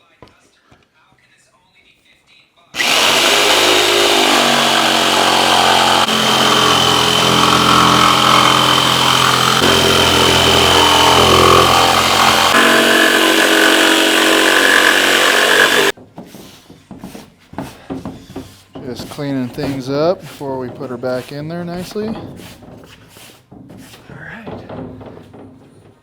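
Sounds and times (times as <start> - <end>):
electric power tool cutting: 2.8 - 16.0.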